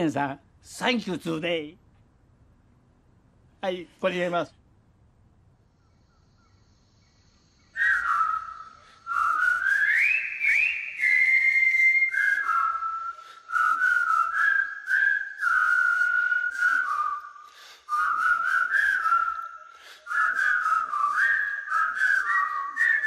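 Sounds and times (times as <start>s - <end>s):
person whistling a tune: 7.8s - 23.0s.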